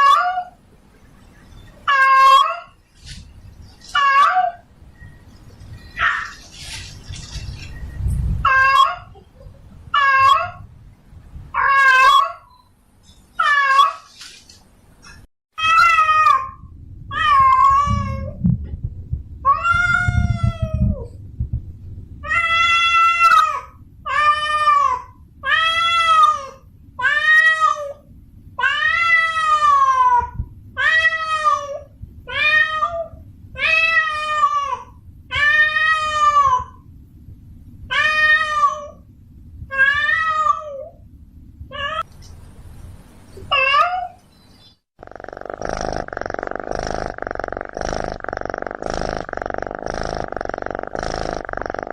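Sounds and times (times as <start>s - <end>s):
cat meowing: 15.6s - 18.4s.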